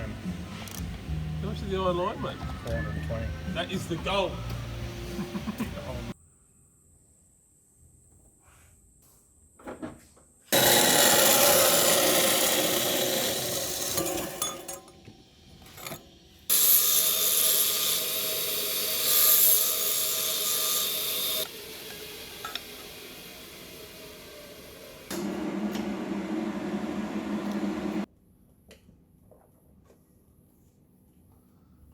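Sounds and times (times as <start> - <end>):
power tool bursts: 10.5 - 14.8, 16.5 - 28.1.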